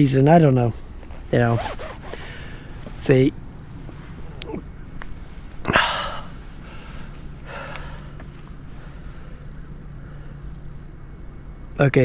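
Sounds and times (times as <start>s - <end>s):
low steady hum: 0.0s - 12.0s
soft breath: 2.0s - 3.0s, 3.8s - 10.6s.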